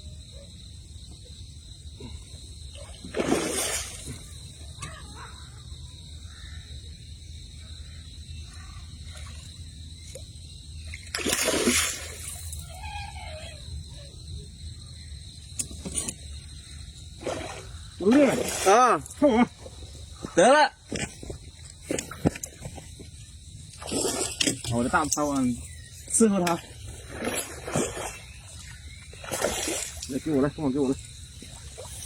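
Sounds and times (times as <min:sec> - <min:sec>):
loud water splashes: 0:03.0 - 0:04.3, 0:11.1 - 0:12.5, 0:17.2 - 0:19.0, 0:27.0 - 0:28.6, 0:29.2 - 0:30.4.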